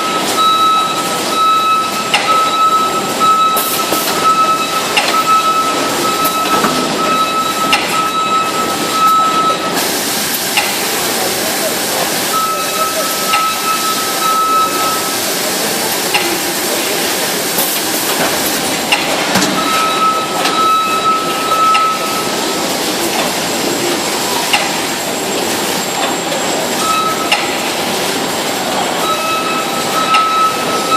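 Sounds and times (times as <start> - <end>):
sharp knocks and clanks: 6.2 - 8.2, 18.1 - 20.7.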